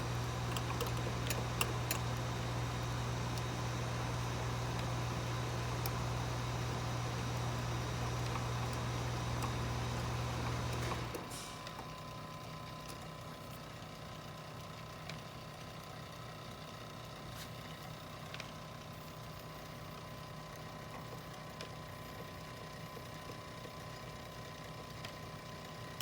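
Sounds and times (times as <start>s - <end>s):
machine hum: 0.0s - 11.7s.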